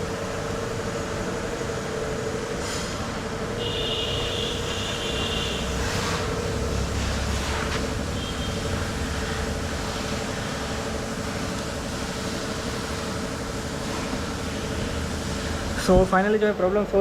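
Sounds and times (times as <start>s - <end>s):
machine hum with whine: 0.0s - 17.0s.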